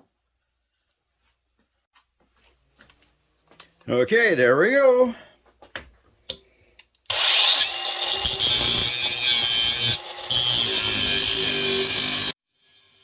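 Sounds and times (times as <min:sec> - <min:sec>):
angle grinder cutting steel: 0:07.1 - 0:13.0.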